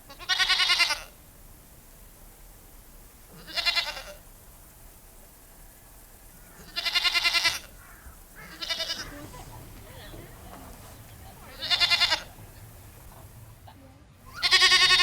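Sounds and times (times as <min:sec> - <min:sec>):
goat bleating: 0:00.1 - 0:01.2, 0:03.3 - 0:04.2, 0:06.5 - 0:13.4, 0:14.2 - 0:15.0.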